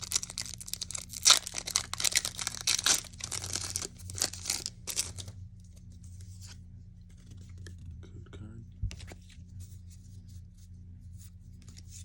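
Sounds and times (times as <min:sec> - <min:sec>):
foil pack tearing and crinkling: 0:00.0 - 0:05.3.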